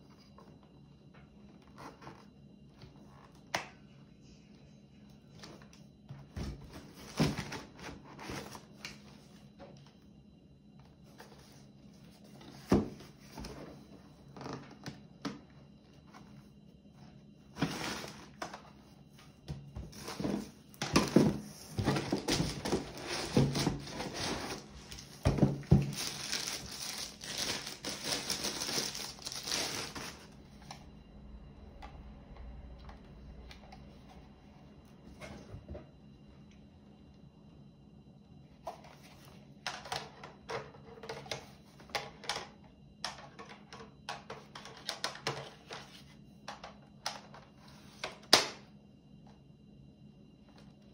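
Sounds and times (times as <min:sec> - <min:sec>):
packaging crinkling and rustling: 0:20.0 - 0:30.3.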